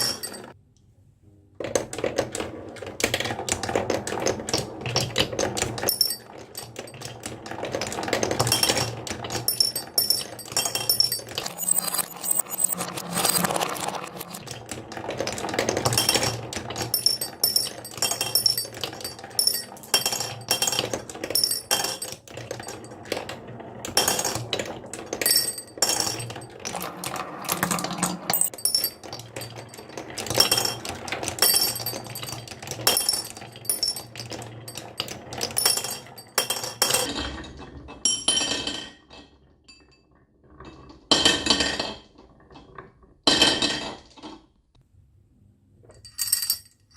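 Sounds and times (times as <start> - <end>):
marbles rolling down a marble run: 0.0 - 0.6, 1.6 - 37.9.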